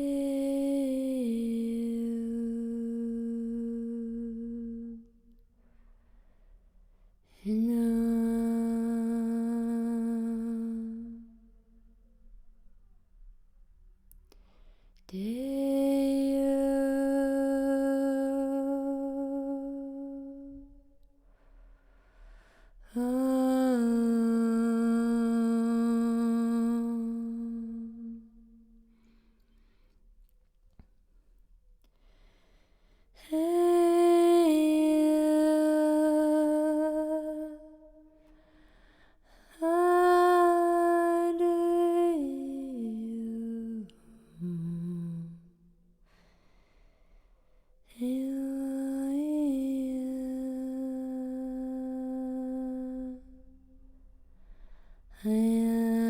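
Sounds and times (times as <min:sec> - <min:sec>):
woman humming a low tone: 0:00.0 - 0:05.3, 0:07.3 - 0:11.7, 0:15.1 - 0:21.2, 0:22.9 - 0:28.8, 0:39.5 - 0:45.7, 0:47.9 - 0:53.6.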